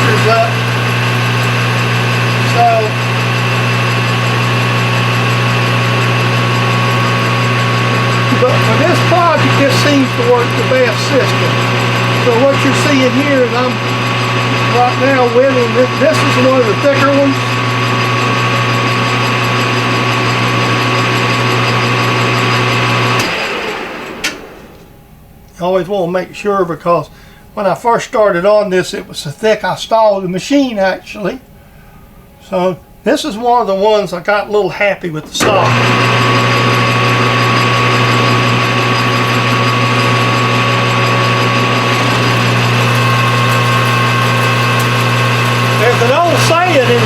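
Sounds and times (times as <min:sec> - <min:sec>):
metal lathe humming and whining: 0:00.0 - 0:25.1, 0:35.2 - 0:47.0
motor switch click: 0:23.2 - 0:25.0.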